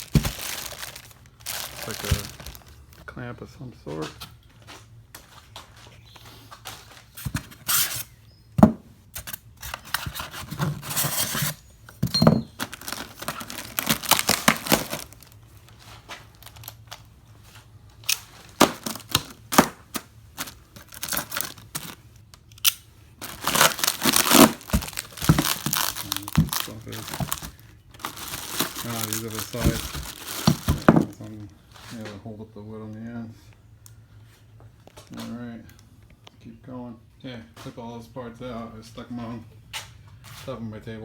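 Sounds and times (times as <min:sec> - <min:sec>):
packaging tearing and crinkling: 0:00.0 - 0:02.8, 0:12.6 - 0:15.4, 0:16.3 - 0:17.0, 0:18.0 - 0:22.0, 0:23.2 - 0:31.2.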